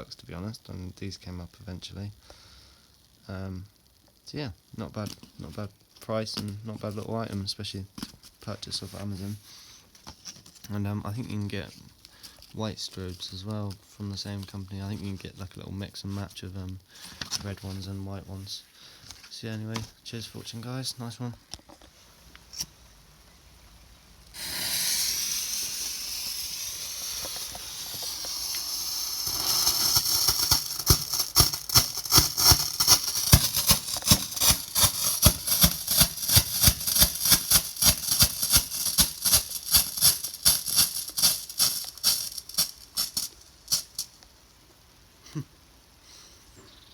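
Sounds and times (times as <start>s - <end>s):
firework hissing: 22.0s - 44.3s
firework popping sharply: 24.2s - 44.2s.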